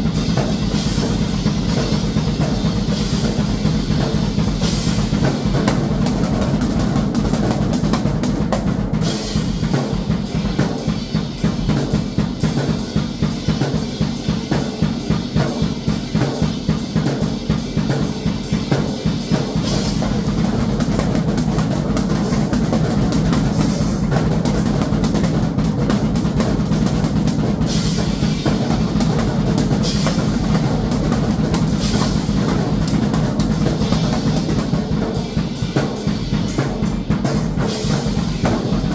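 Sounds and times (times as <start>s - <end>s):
fast drum kit playing: 0.0s - 38.9s.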